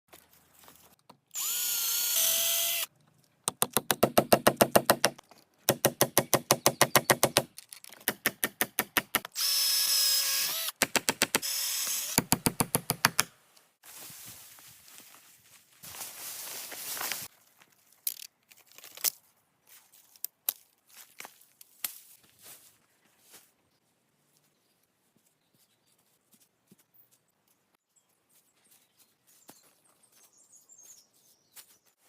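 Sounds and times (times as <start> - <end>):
power drill whining: 1.3 - 2.9, 9.4 - 10.7, 11.4 - 12.2.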